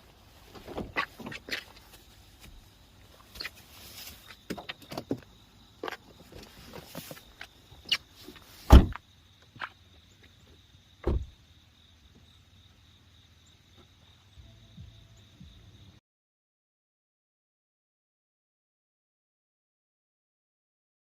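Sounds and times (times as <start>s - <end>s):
sharp knocks and thumps: 11.0s - 11.3s.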